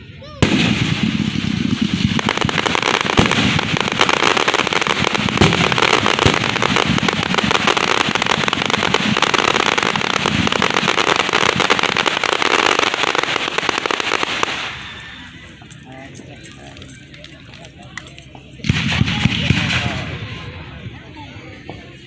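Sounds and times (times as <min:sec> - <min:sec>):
fireworks crackling: 0:00.1 - 0:22.0
fireworks booms: 0:00.4 - 0:15.3, 0:18.6 - 0:21.0.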